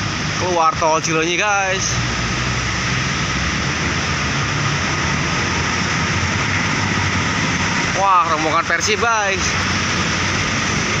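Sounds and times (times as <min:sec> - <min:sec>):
heavy road traffic passing: 0:00.0 - 0:11.0.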